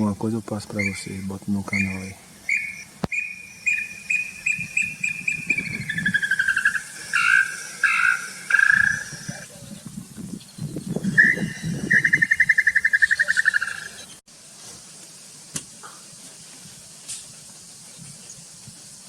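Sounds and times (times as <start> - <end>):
bird whistling rapid notes: 0.8 - 9.4, 10.6 - 14.2.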